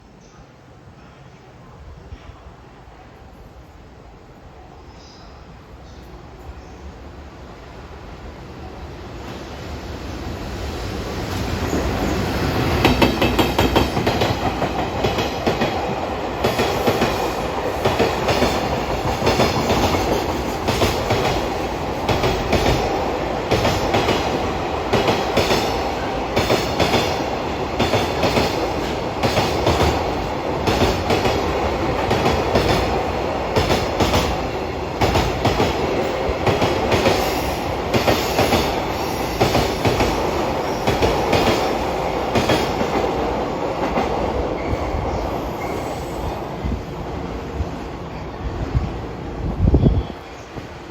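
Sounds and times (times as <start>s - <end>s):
train wheels clacking over rail joints: 12.5s - 43.2s.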